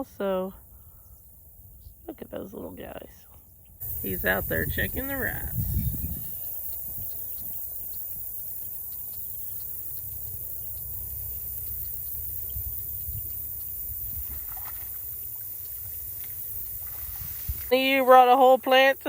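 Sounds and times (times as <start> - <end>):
wind buffeting microphone: 3.8 - 8.4, 16.6 - 17.9.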